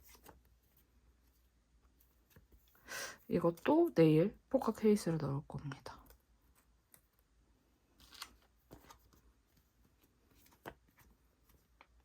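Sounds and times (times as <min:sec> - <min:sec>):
faint clicks and rustles of packaging: 0:00.0 - 0:02.8, 0:07.9 - 0:12.0.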